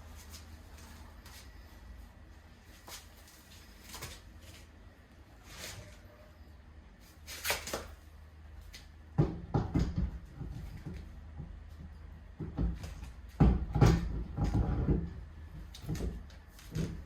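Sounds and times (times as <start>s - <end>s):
knocks and clanks on car wheel: 9.2s - 11.6s, 12.4s - 15.2s.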